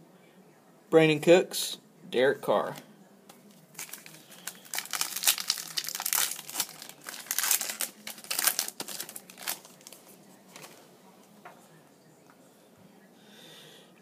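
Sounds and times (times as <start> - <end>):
foil wrapper crinkling and tearing: 3.7 - 10.0.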